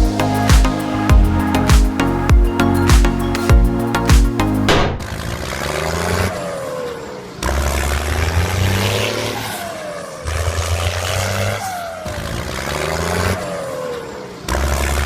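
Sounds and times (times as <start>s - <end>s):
falling whine: 0.0s - 4.7s.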